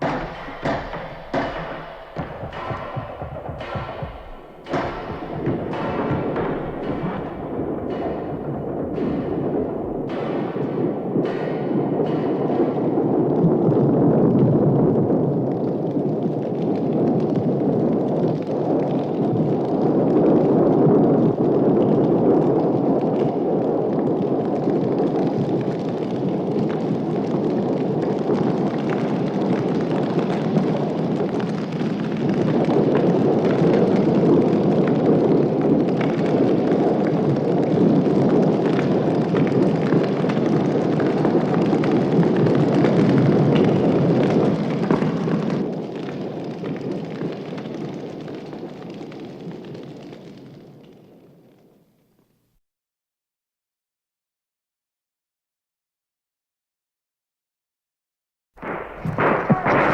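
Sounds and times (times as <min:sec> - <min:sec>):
continuous rumbling roar: 0:00.0 - 0:15.6
crackles and pops: 0:00.0 - 0:52.6, 0:58.6 - 0:59.9.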